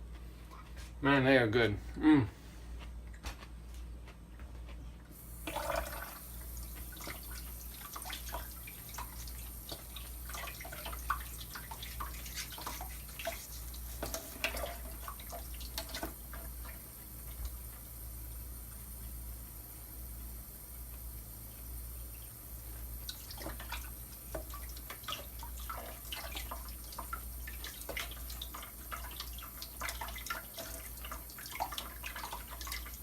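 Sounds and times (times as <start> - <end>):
steady low hum: 0.0 - 33.0
water trickling and dripping: 5.4 - 19.2, 22.1 - 33.0.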